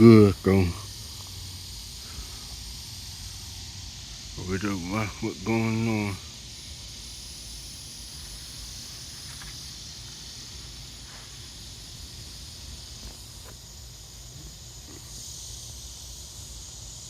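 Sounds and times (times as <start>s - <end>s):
high-pitched insect chorus: 0.0s - 17.0s.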